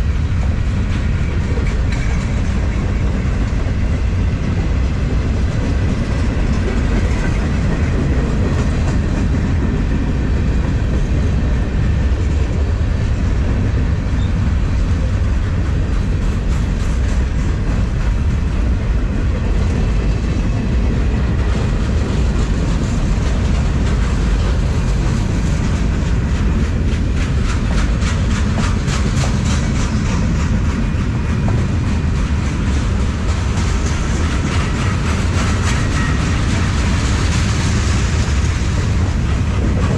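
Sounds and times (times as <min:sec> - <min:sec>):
heavy rumble of train wheels: 0:00.0 - 0:39.9
wheels clacking over rail joints: 0:00.0 - 0:39.9.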